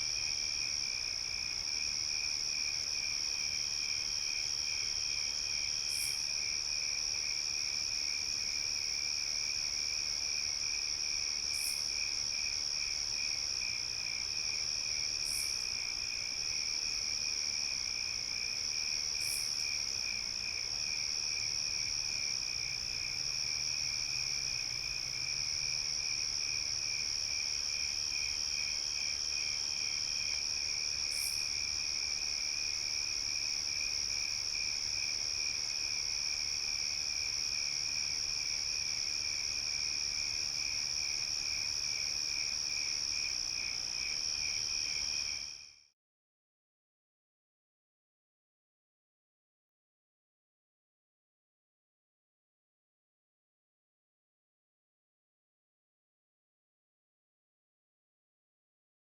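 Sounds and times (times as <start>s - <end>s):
pulsing cricket chirp: 0.1s - 7.9s, 8.5s - 45.6s
crickets trilling: 15.2s - 15.9s, 25.5s - 45.6s.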